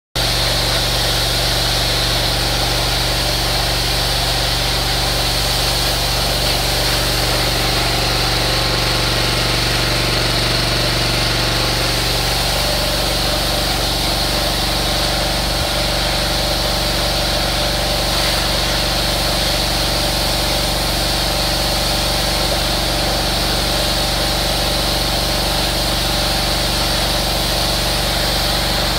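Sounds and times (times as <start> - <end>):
high-pressure water spray: 0.2 - 28.9
pressure washer engine hum: 0.2 - 28.9.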